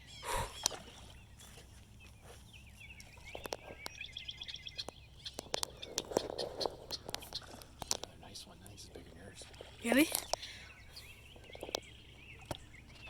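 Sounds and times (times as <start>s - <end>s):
songbirds chirping and trilling: 0.0s - 13.0s.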